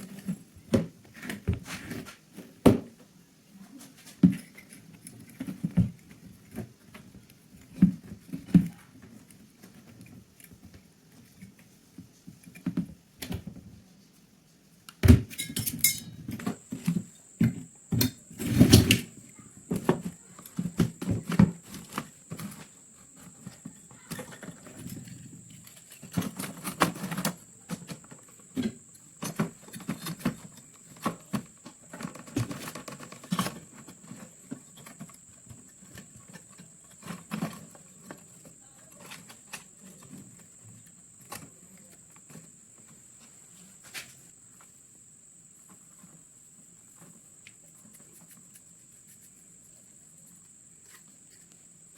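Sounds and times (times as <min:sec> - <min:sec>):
metal parts and tools clinking: 0:15.3 - 0:16.2.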